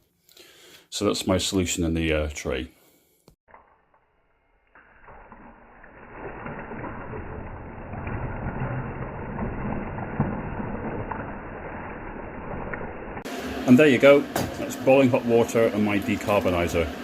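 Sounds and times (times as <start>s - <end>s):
water bubbling and crackling: 4.6s - 17.0s.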